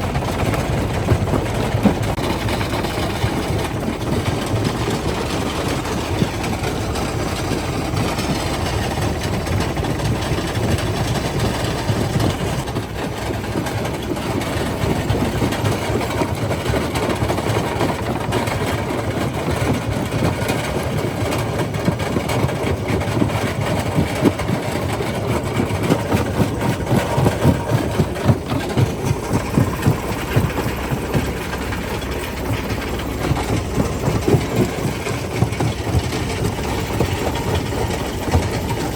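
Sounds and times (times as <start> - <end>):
heavy machine drone: 26.7 - 38.9.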